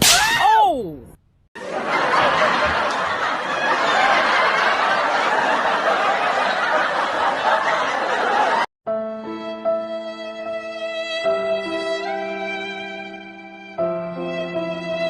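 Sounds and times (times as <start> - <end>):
crowd laughter: 1.6 - 8.7
sad violin melody: 8.9 - 15.0.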